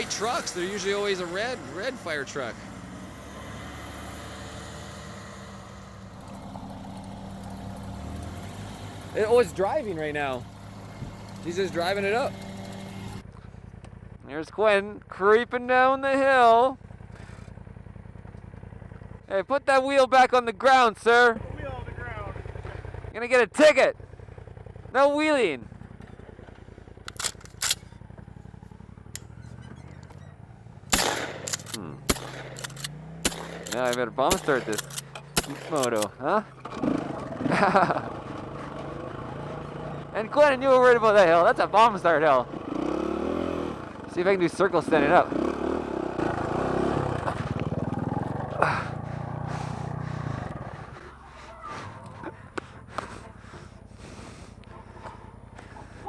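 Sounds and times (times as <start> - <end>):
dirt bike engine idling: 0.0 - 56.0
sharp clicks: 10.3 - 13.2, 27.1 - 27.8, 30.9 - 36.1.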